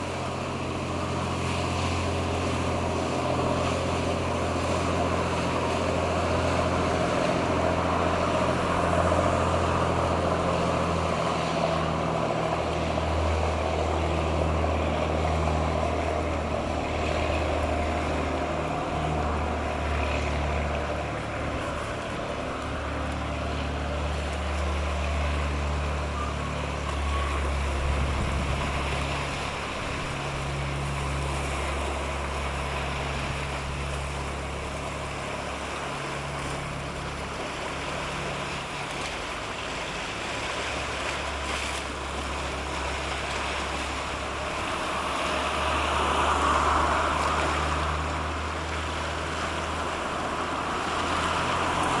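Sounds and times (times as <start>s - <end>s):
boat engine droning: 0.0s - 52.0s
water rushing: 0.0s - 52.0s
water washing against shore: 0.0s - 52.0s
wind on microphone: 27.4s - 31.5s.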